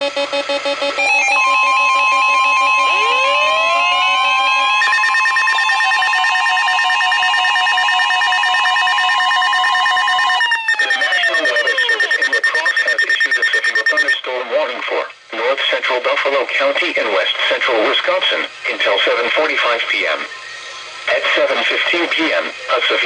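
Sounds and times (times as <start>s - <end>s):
electronic alert tones sweeping: 0.0s - 14.2s
fast pulsing beep: 4.9s - 14.2s.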